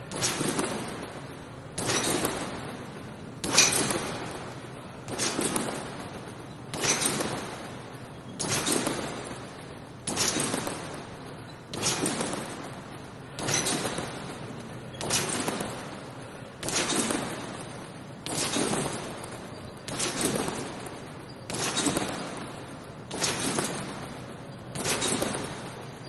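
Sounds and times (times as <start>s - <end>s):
trampoline bouncing: 0.0s - 26.0s.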